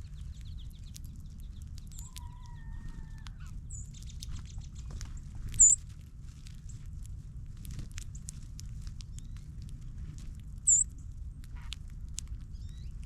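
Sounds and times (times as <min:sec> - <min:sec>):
low rumble: 0:00.0 - 0:13.0
songbird chip calls: 0:05.5 - 0:05.8, 0:10.6 - 0:10.9, 0:12.5 - 0:13.0.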